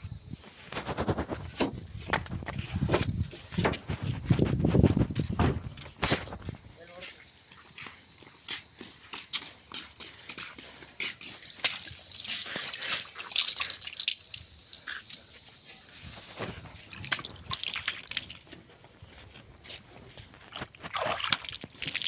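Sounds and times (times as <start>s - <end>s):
insects chirring: 0.0s - 22.0s
clicks and squelchy crackles: 0.4s - 6.6s, 16.1s - 22.0s.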